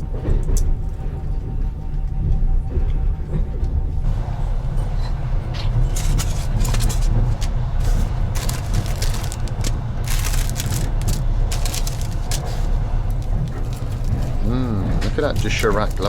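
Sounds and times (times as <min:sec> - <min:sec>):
moving train rumble: 0:00.0 - 0:16.0
plastic wrapping crinkling: 0:06.0 - 0:14.5, 0:15.4 - 0:16.0.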